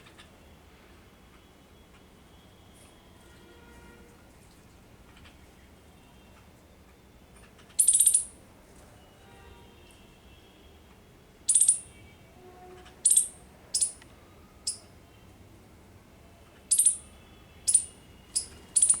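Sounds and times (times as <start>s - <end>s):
small bird chirping: 7.5s - 8.4s, 11.5s - 12.0s, 13.0s - 14.0s, 14.6s - 14.9s, 16.6s - 19.0s.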